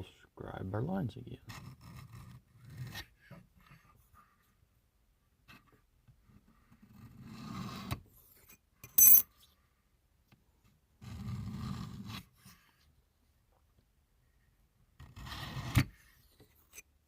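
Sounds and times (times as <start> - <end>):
sharp metallic clink: 8.9 - 9.3.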